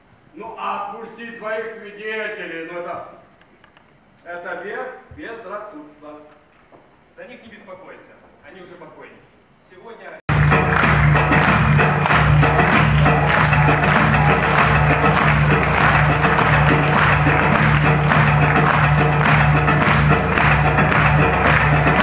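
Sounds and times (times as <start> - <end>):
loud music with bass line: 10.3 - 22.0.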